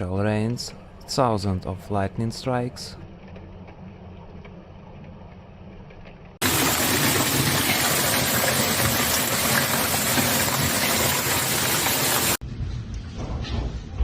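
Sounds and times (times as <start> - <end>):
heavy rain downpour: 6.4 - 12.4.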